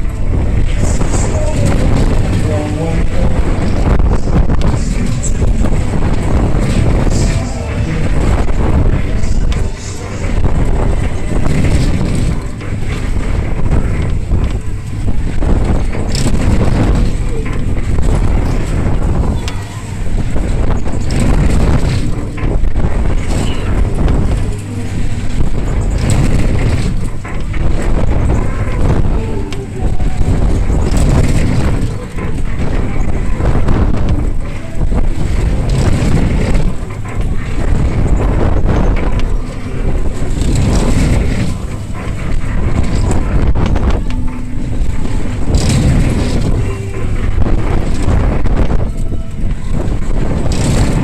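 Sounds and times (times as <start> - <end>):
clicks and knocks: 0.0 - 51.0
fairground ride rumble: 0.0 - 51.0
wind buffeting microphone: 0.0 - 51.0.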